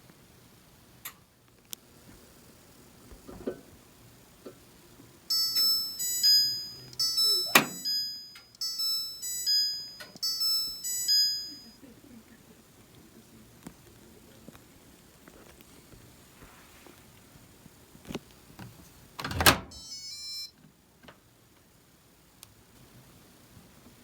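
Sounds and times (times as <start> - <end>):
electronic beeper tune: 5.3 - 11.8, 19.7 - 20.5.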